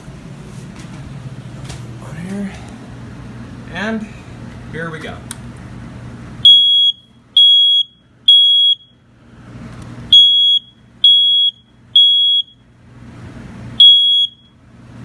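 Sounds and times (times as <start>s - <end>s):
smoke alarm beeping: 6.4s - 9.0s, 10.1s - 12.7s, 13.8s - 14.6s.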